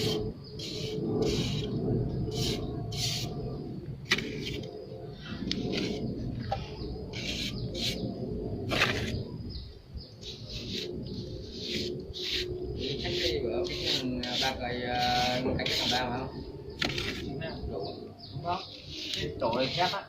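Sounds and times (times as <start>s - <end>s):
low background rumble: 0.0s - 20.0s
trowel scraping wet render: 11.5s - 16.2s, 18.9s - 20.0s.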